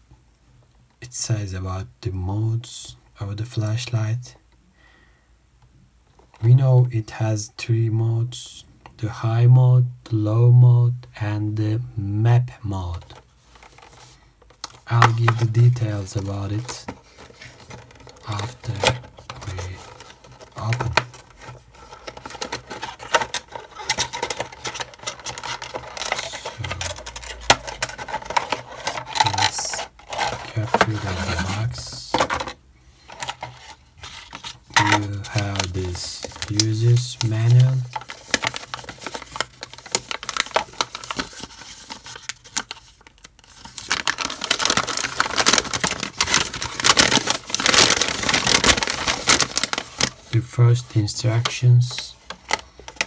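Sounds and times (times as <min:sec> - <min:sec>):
packaging scraping and rustling: 0:13.0 - 0:53.0.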